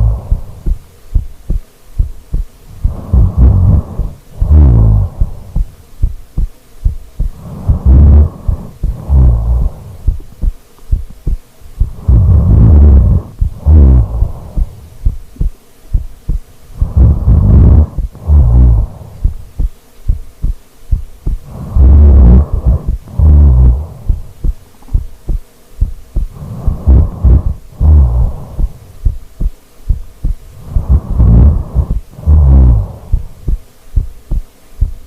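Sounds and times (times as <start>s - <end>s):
person snoring: 0.0s - 0.8s, 2.7s - 5.8s, 7.2s - 10.2s, 11.8s - 15.2s, 16.7s - 19.4s, 21.4s - 25.0s, 26.2s - 29.2s, 30.5s - 33.6s.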